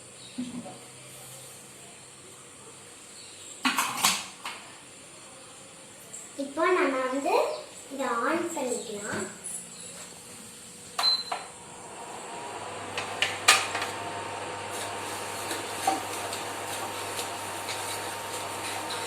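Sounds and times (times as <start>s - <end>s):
stove humming with high whine: 0.0s - 19.0s
stove switch clicks: 13.0s - 13.9s.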